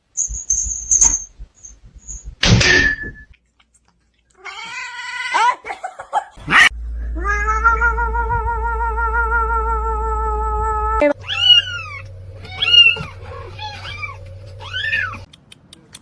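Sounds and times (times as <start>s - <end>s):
cat yowling: 6.5s - 15.3s.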